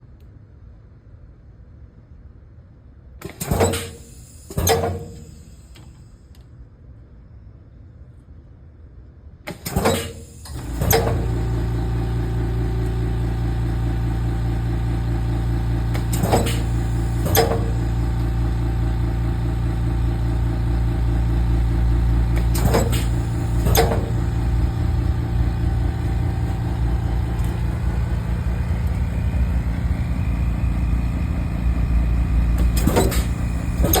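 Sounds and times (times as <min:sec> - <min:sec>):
machine hum: 0:10.5 - 0:34.0
riveter sharp clicks: 0:22.3 - 0:29.8, 0:30.7 - 0:34.0.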